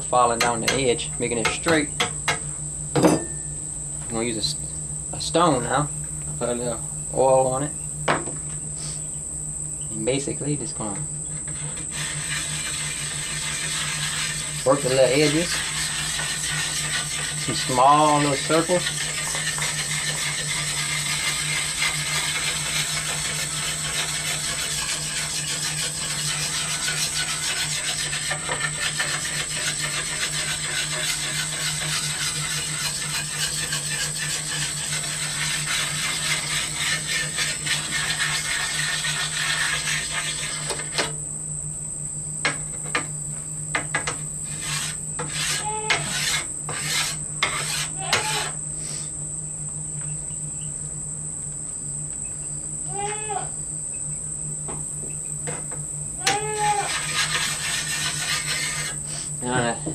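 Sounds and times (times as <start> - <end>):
sharpening stone scraping blade: 11.5 - 41.1, 44.5 - 48.6, 56.3 - 59.3.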